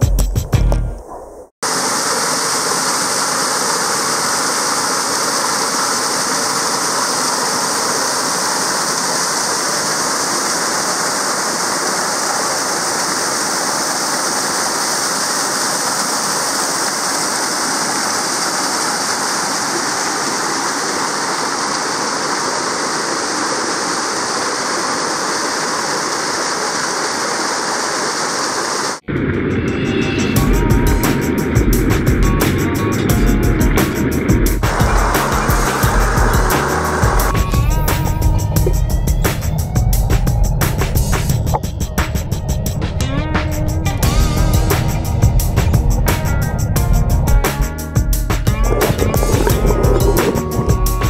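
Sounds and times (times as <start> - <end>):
mountain stream rushing: 1.6 - 29.1, 34.6 - 38.8, 48.6 - 51.0.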